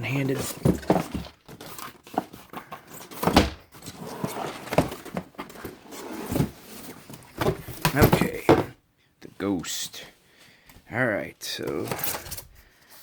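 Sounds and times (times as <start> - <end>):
cardboard box being opened: 0.3 - 8.5.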